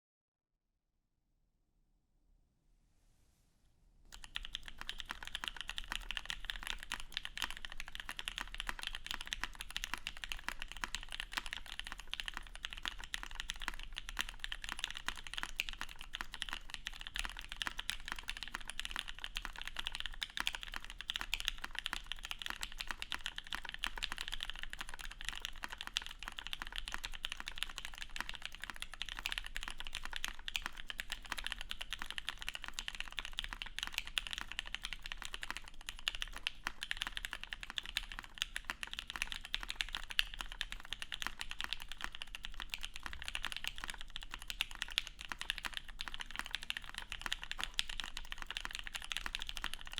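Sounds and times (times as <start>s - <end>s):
fast mechanical keyboard typing: 4.1s - 49.9s.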